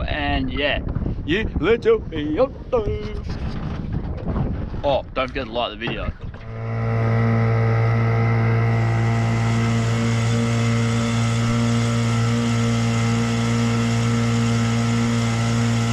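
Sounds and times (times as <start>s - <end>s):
outboard motor running: 3.0s - 15.9s.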